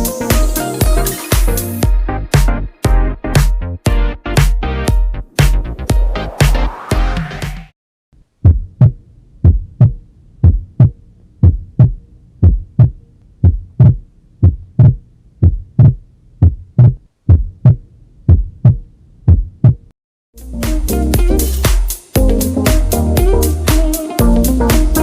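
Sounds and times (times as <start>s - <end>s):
heartbeat thumps: 5.4s - 7.5s, 8.4s - 19.9s.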